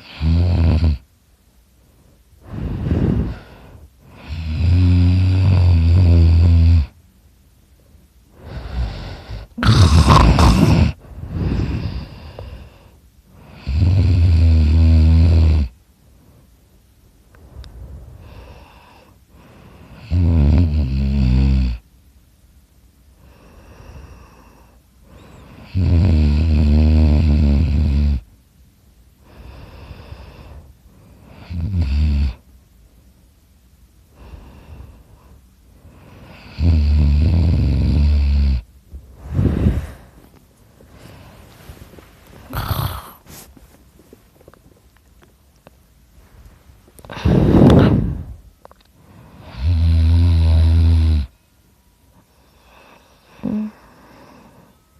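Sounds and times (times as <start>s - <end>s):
person snoring loudly: 0.0s - 1.0s, 2.5s - 6.9s, 8.4s - 12.6s, 13.4s - 15.7s, 19.9s - 21.8s, 25.6s - 28.2s, 31.3s - 32.4s, 36.2s - 38.6s, 42.5s - 43.2s, 49.4s - 51.4s, 53.4s - 53.8s
quiet breaths: 0.0s - 54.9s.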